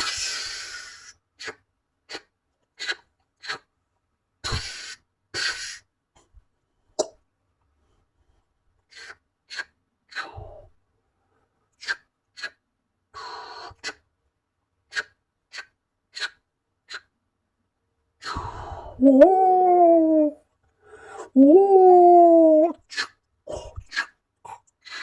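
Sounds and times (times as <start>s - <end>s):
cartoon gasping sounds: 18.3s - 20.4s, 21.1s - 22.9s
cartoon wailing cry: 19.0s - 20.4s, 21.4s - 22.8s.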